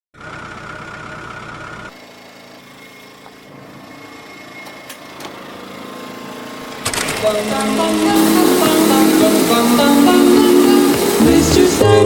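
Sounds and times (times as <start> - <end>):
car engine idling: 0.2 - 2.6, 5.5 - 11.8.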